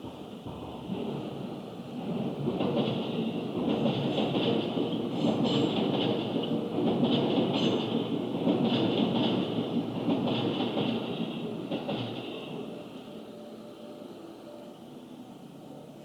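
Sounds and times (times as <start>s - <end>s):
train wheels clattering over rail joints: 0.0s - 12.5s.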